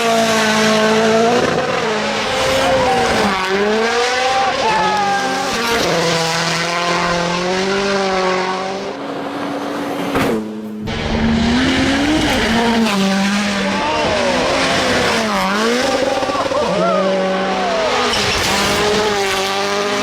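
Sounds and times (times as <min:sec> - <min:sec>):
rally car engine revving: 0:00.0 - 0:20.0.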